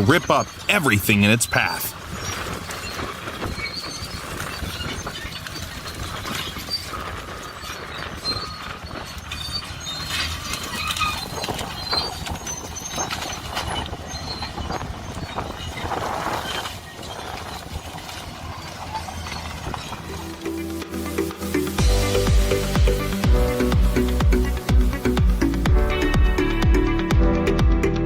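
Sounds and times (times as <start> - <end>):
bulldozer engine hum: 0.0 - 28.0
short high squeals: 1.4 - 21.6.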